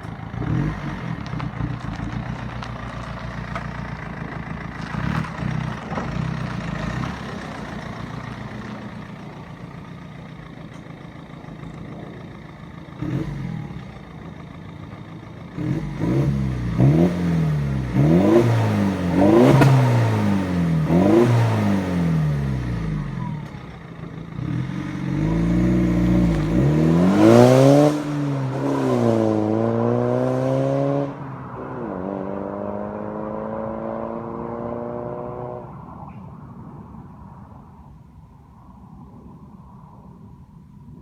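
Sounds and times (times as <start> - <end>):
car engine revving and accelerating: 0.0 - 9.2, 12.9 - 14.1, 15.5 - 23.6, 24.3 - 36.4.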